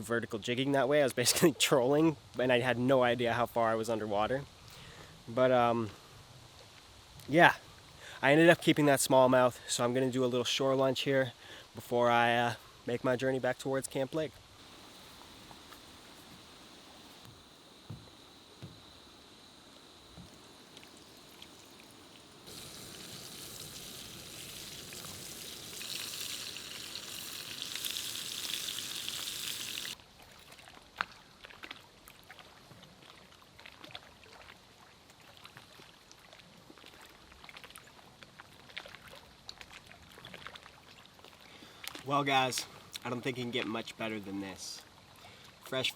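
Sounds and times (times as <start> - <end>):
fish sizzling in a pan: 14.6 - 30.0.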